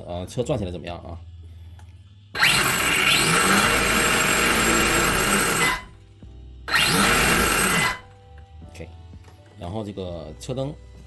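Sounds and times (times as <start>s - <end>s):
electric motor whine: 2.4s - 6.0s, 6.7s - 8.1s.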